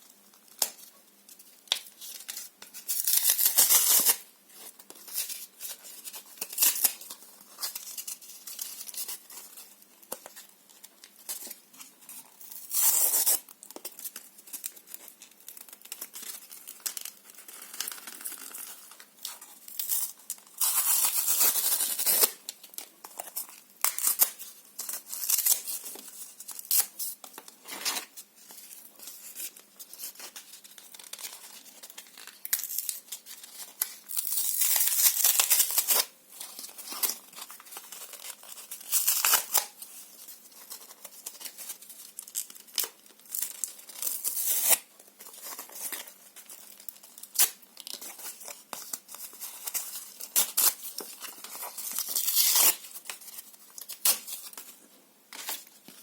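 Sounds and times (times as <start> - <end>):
paper and cardboard tearing: 49.6 - 52.9.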